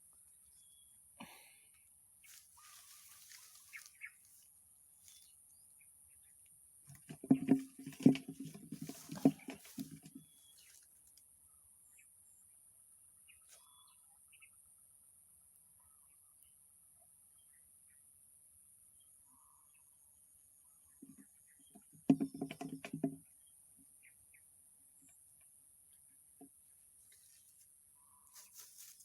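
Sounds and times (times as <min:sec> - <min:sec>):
knocks and rubbing: 0:06.9 - 0:10.2, 0:22.0 - 0:23.2.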